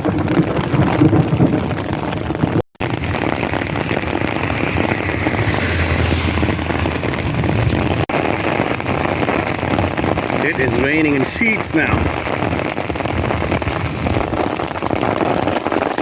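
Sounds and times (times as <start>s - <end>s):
heavy rain pouring: 0.0s - 16.0s
low rumble: 3.3s - 8.1s.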